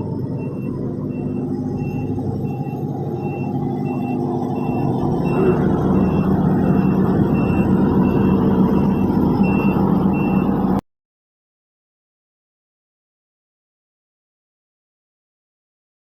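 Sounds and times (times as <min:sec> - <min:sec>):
diesel engine running: 0:00.0 - 0:10.8
reversing alarm beeping: 0:00.0 - 0:10.8.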